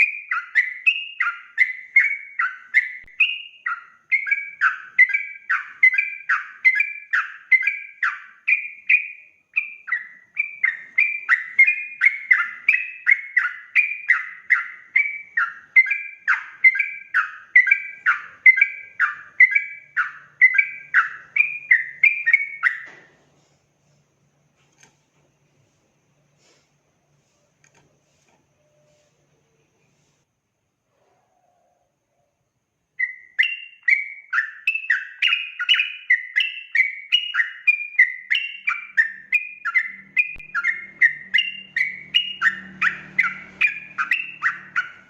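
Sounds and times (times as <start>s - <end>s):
bird singing short falling notes: 0.0s - 23.2s, 33.0s - 45.0s.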